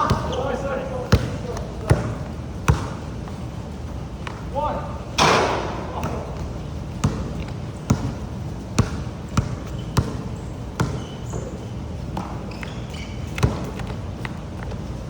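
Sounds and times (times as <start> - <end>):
steady background hiss: 0.0 - 15.0
sharp knocks: 5.2 - 6.2.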